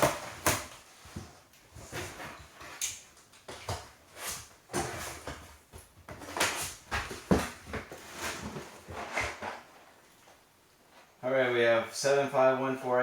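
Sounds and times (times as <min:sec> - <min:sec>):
boxes rustling and knocking: 0:00.0 - 0:09.9.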